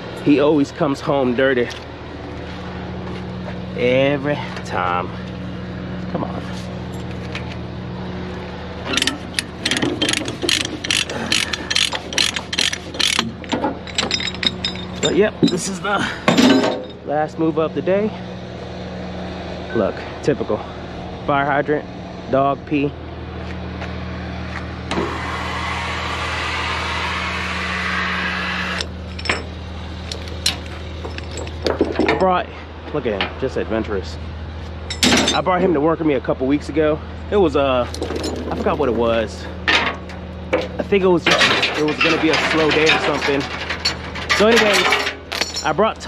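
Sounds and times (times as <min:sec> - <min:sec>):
engine idling: 0:00.0 - 0:21.4
metal ratchet clicking: 0:08.9 - 0:15.6
sharp clicks and clinks: 0:08.9 - 0:17.0, 0:39.7 - 0:45.8.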